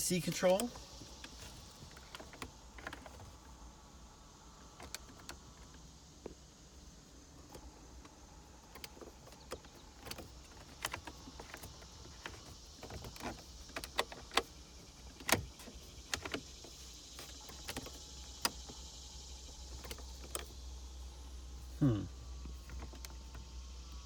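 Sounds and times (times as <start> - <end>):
plastic buttons and knobs clicking: 4.7 - 5.8, 7.4 - 16.7.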